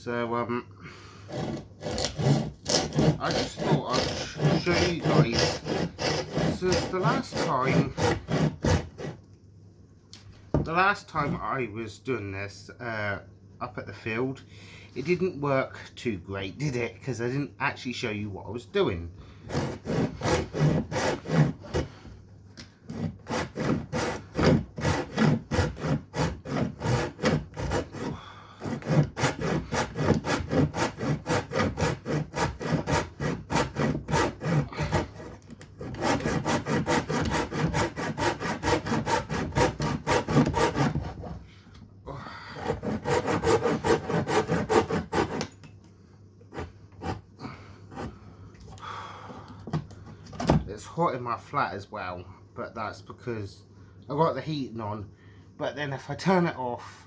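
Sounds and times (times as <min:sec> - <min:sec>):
hand saw cutting wood: 0:01.3 - 0:09.2, 0:19.5 - 0:22.0, 0:22.9 - 0:41.4, 0:42.6 - 0:45.6, 0:46.5 - 0:47.3, 0:47.9 - 0:48.2.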